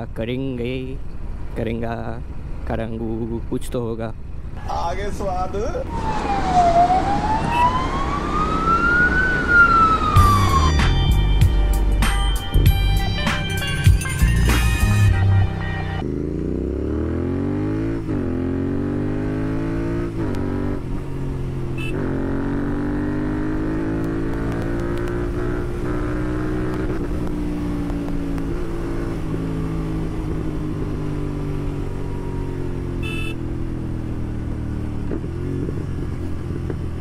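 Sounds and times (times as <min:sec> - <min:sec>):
motorcycle engine accelerating: 0:13.6 - 0:37.0.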